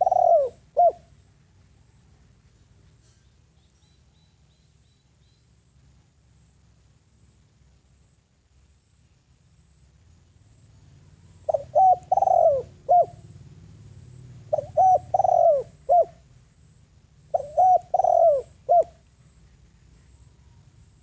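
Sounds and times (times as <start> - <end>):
dove cooing: 0.0 - 1.2, 11.3 - 13.4, 14.4 - 16.2, 17.3 - 19.0.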